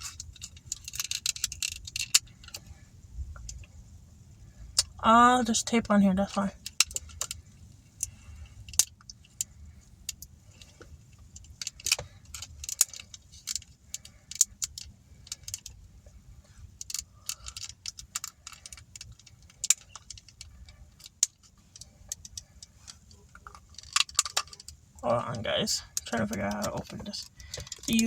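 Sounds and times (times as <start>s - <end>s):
low steady rumble: 0.0s - 28.0s
plastic package crinkling and clicking: 16.8s - 24.8s.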